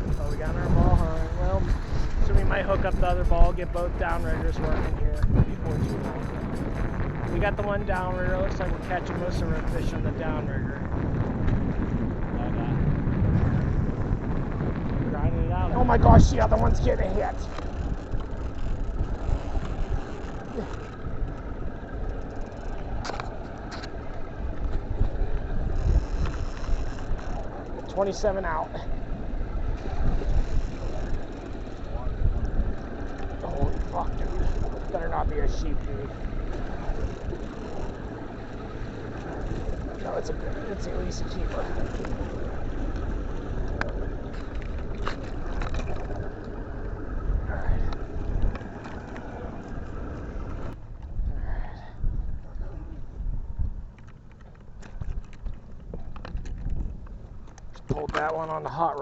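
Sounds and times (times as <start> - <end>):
boat engine rumble: 0.0 - 59.0.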